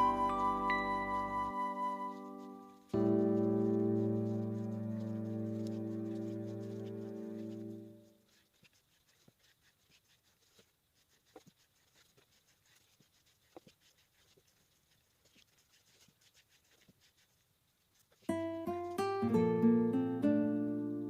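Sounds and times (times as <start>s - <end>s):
music: 0.0s - 8.0s, 18.3s - 21.0s
faint clicks and scratches: 1.8s - 19.1s.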